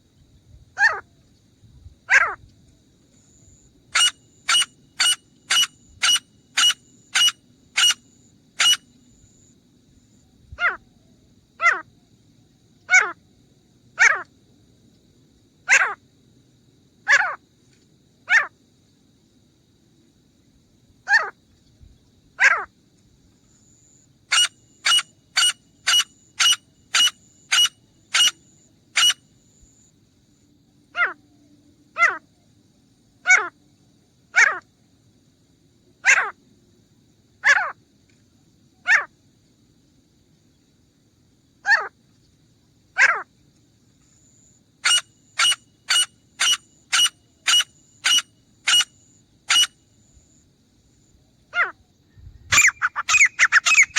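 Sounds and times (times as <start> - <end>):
bird calling sharp notes: 4.0 - 8.0, 8.6 - 8.8, 24.3 - 28.4, 29.0 - 29.2, 44.8 - 48.9, 49.5 - 49.7, 52.5 - 53.9.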